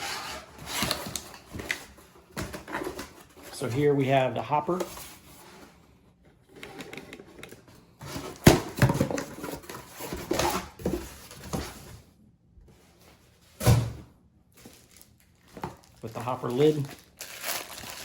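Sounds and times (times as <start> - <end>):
packaging rustling: 14.6 - 18.0.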